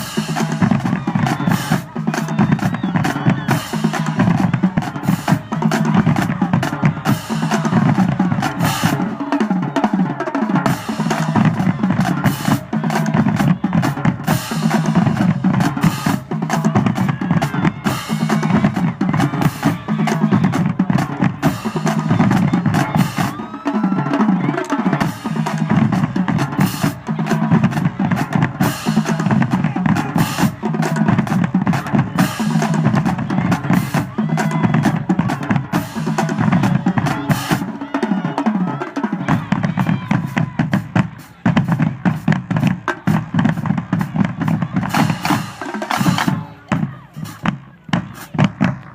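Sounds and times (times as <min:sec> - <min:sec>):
bass drums: 0:00.0 - 0:09.4, 0:10.5 - 0:37.9, 0:39.2 - 0:48.9
snare drum rolls and rimshots: 0:00.0 - 0:48.9.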